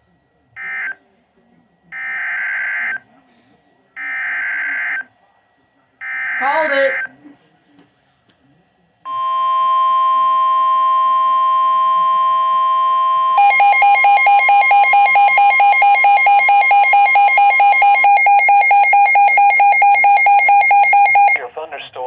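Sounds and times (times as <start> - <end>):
steady warning alarm tone: 9.1 - 21.4
rapid electronic alarm beeps: 13.3 - 21.4.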